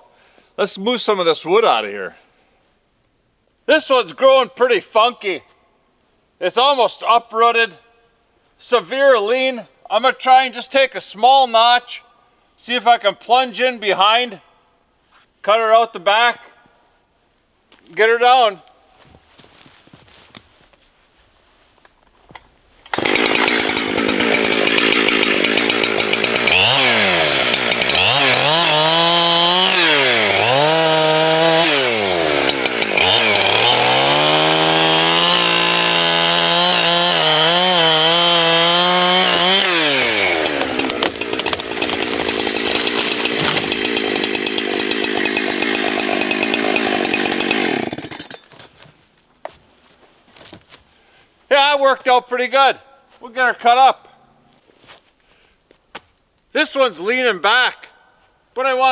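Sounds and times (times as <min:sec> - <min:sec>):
chainsaw cutting tree: 0:22.9 - 0:48.8.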